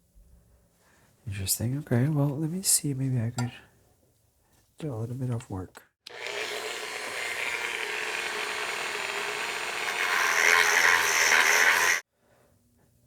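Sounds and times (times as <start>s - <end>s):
small power tool running: 6.1s - 12.1s.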